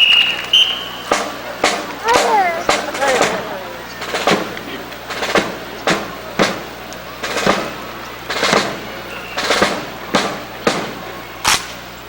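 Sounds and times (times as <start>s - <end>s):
faint crowd background: 0.0s - 12.0s.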